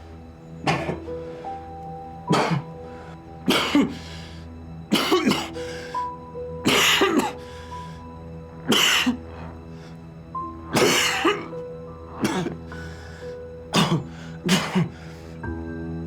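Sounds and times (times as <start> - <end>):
sustained music score: 0.0 - 16.0
person coughing: 0.7 - 1.0, 2.3 - 2.7, 3.5 - 3.9, 4.9 - 5.5, 6.7 - 7.4, 10.8 - 11.5, 12.2 - 12.6, 13.8 - 14.9.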